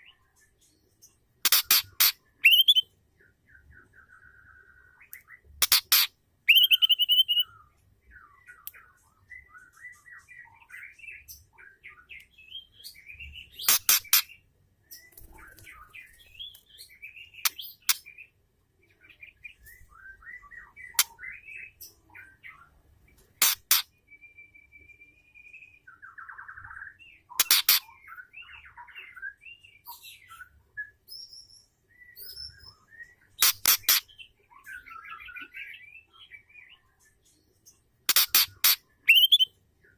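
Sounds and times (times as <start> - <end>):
loud sharp bird calls: 1.4 - 2.9, 4.0 - 7.6, 23.4 - 24.0, 26.1 - 29.2, 33.3 - 36.1, 38.1 - 39.6
bird chirping and warbling: 1.4 - 18.3, 23.4 - 24.9, 25.5 - 37.0, 38.1 - 39.9.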